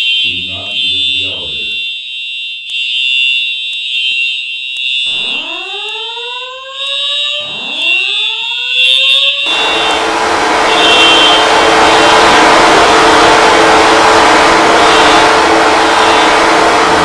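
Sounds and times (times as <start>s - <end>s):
fire alarm horn tone: 0.0s - 17.0s
slow-whoop alarm sweeps: 4.8s - 17.0s
steady rushing noise: 9.5s - 17.0s.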